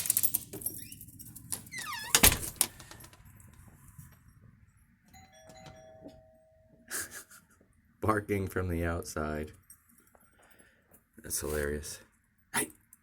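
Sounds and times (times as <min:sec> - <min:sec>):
electronic doorbell chime: 0:05.1 - 0:06.9.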